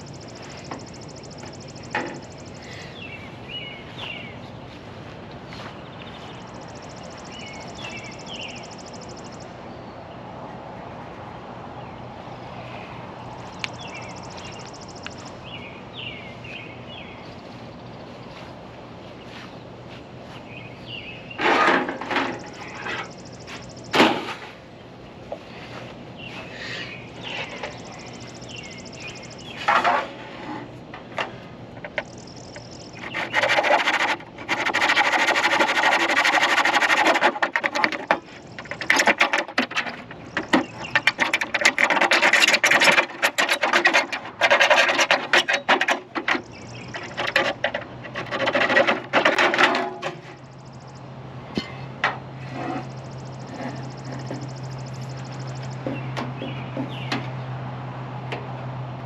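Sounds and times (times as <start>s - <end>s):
scrapes and knocks: 0.0s - 2.4s, 21.4s - 24.6s, 25.3s - 50.5s, 51.6s - 57.4s
hacksaw rasping through metal: 32.9s - 50.2s.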